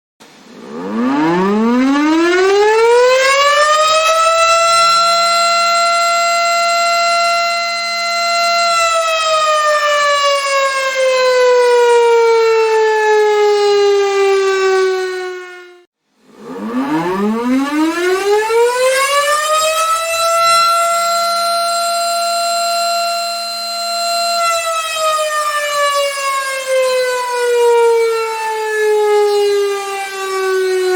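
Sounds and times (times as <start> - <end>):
warning siren wailing: 0.5 - 30.9.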